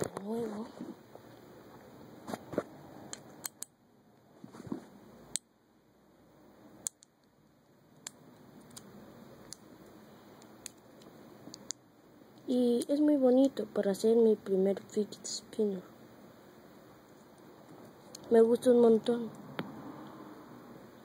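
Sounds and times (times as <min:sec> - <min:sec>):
small sharp clicks: 0:03.1 - 0:03.8, 0:10.4 - 0:11.8
faint handling noise: 0:04.2 - 0:05.0.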